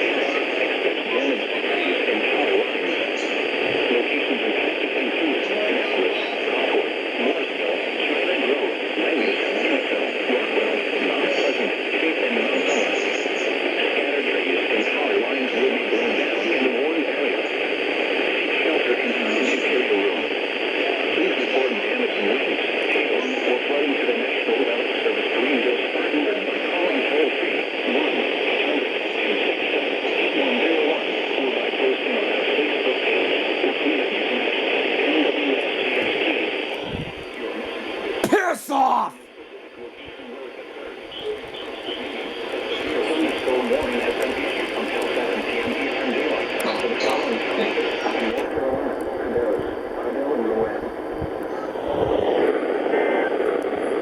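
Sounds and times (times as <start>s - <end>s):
radio static hiss: 0.0s - 54.0s.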